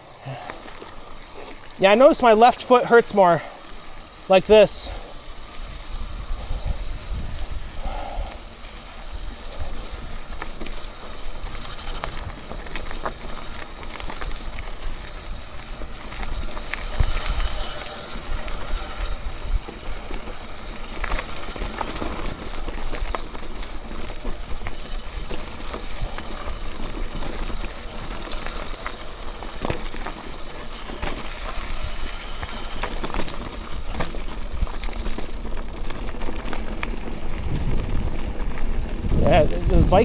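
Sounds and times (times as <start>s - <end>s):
bike rattling: 0.0s - 40.0s
tyres rumbling on trail: 0.0s - 40.0s
wind on microphone: 38.9s - 40.0s.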